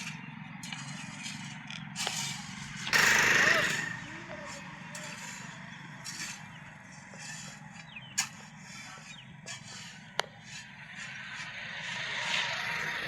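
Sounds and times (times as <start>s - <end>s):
sharp metallic knocks: 0.0s - 7.4s
light clinks and scrapes: 0.0s - 12.7s
machine humming: 0.0s - 13.0s.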